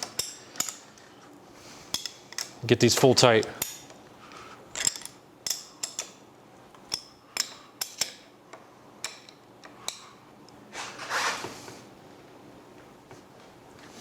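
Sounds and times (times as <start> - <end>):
scraping rustle: 10.7 - 11.8.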